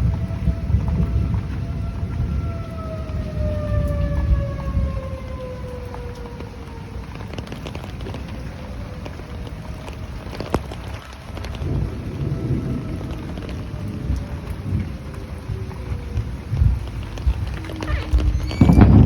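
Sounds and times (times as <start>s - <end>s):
warning siren winding down: 0.0s - 7.2s, 11.8s - 19.0s
steady rain: 0.0s - 19.0s
low rumbling: 11.6s - 19.0s.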